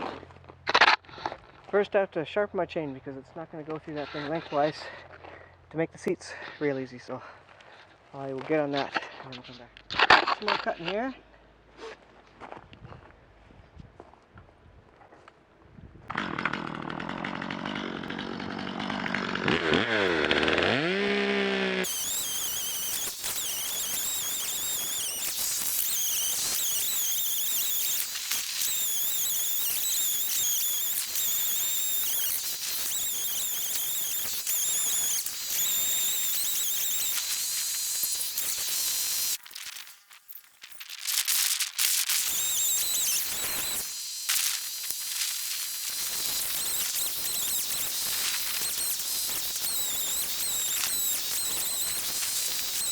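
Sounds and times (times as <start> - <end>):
chainsaw cutting log: 16.1 - 52.9.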